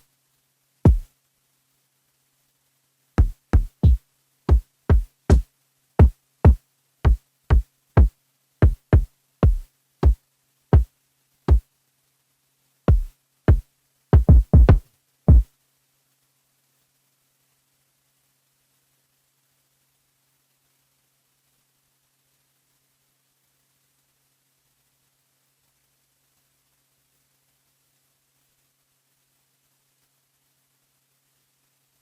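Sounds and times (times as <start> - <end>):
electronic kick drum hits: 0.9 - 1.1, 3.2 - 5.4, 6.0 - 10.2, 12.9 - 13.6, 14.2 - 15.4.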